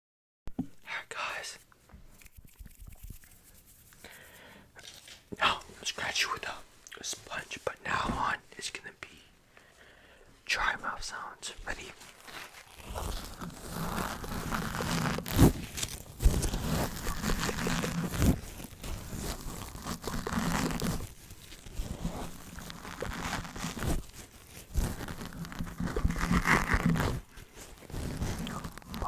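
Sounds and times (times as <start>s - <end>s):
dry mouth sounds: 0.6s - 5.8s, 11.1s - 23.9s, 24.5s - 29.0s
scratching and brushing on microphone: 1.2s - 5.2s, 10.6s - 29.0s.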